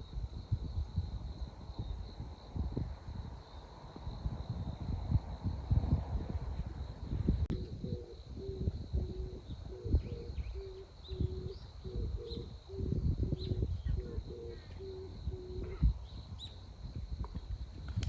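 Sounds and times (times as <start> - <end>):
wind rumbling on microphone: 0.0 - 18.0
bird cooing: 7.5 - 16.0.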